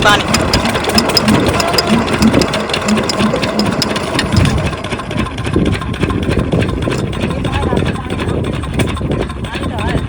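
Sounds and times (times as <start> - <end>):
diesel pump engine running: 0.0 - 10.0.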